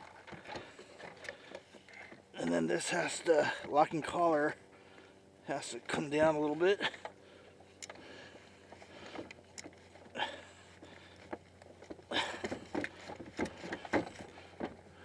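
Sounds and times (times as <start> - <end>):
clicks knocks and scrapes: 12.5 - 14.8.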